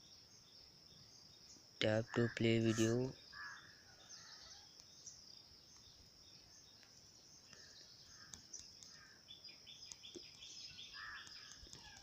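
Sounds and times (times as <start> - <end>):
faint chirps and ticks: 0.0 - 12.0.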